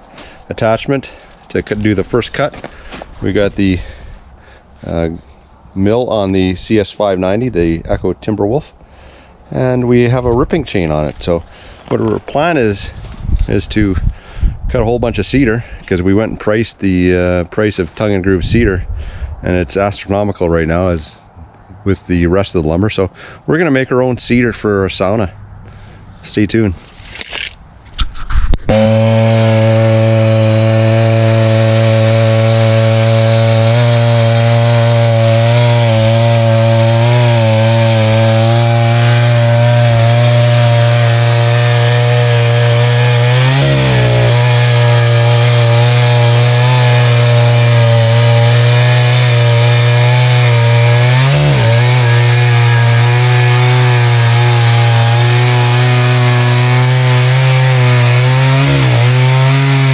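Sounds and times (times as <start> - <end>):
chainsaw cutting log: 28.3 - 59.9.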